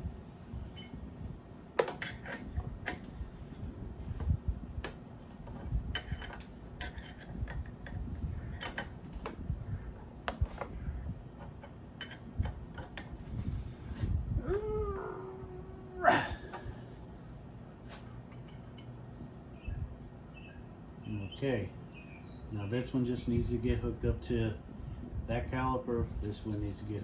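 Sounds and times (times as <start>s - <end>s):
low steady rumble: 0.0s - 27.0s
small metal parts clinking: 1.8s - 3.2s, 5.2s - 9.3s.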